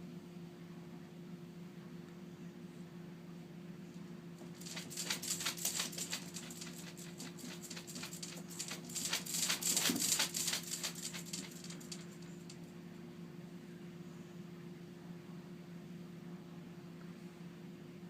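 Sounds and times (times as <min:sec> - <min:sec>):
steady low hum: 0:03.8 - 0:13.7
kittens' claws scrabbling: 0:04.4 - 0:12.6.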